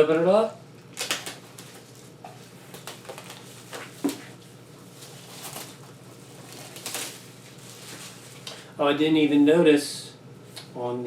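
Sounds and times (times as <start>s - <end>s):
faint rustling of packaging: 1.0s - 8.7s.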